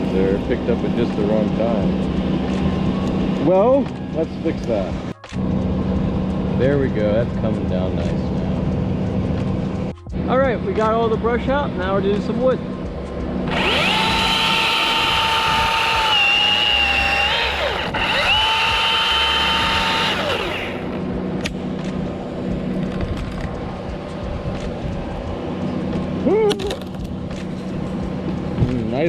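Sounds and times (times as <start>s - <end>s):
electric chainsaw cutting wood: 13.5s - 21.1s.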